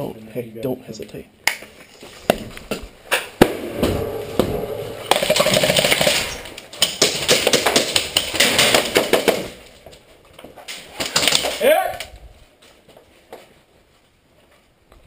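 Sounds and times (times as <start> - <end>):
airsoft guns firing: 5.0 - 9.6.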